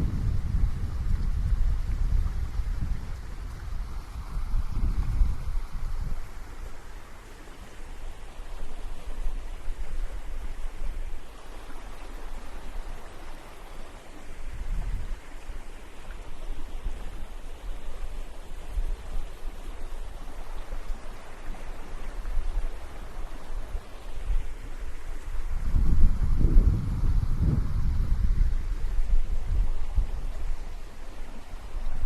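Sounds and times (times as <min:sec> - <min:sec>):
wind buffeting microphone: 0:00.0 - 0:06.8, 0:14.4 - 0:15.3, 0:23.6 - 0:32.0
sea waves washing on beach: 0:00.0 - 0:32.0.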